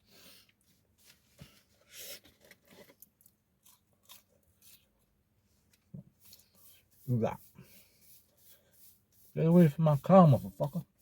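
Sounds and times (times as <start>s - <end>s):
chewing crispy chips: 3.2s - 4.8s.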